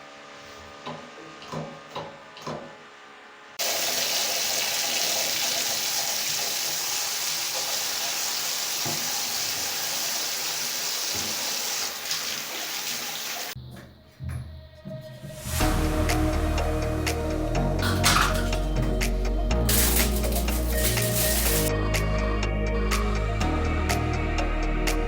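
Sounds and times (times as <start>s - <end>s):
water running from a tap: 3.6s - 13.6s, 17.8s - 19.0s, 19.6s - 21.7s.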